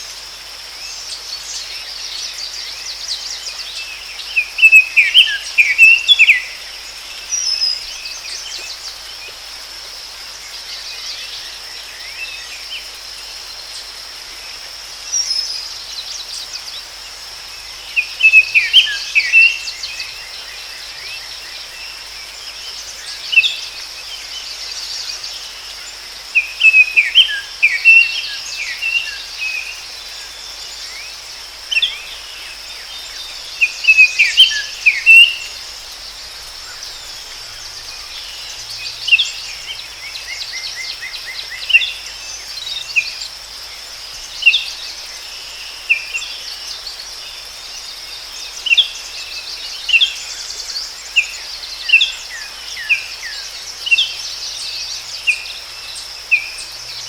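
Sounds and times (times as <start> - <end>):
birds chirping: 31.8 - 43.4
bird trill: 33.6 - 35.6.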